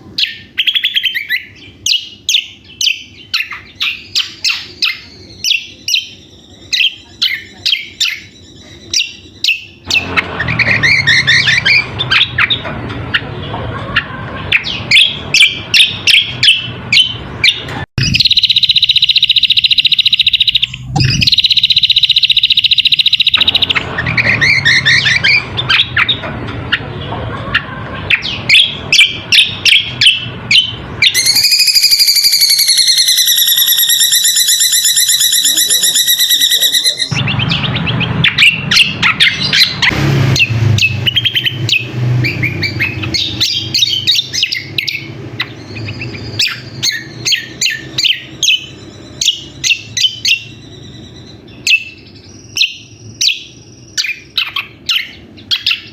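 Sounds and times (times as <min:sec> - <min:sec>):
bird chirping rapidly: 0:00.0 - 0:55.9
bird long trilled note: 0:31.1 - 0:37.4.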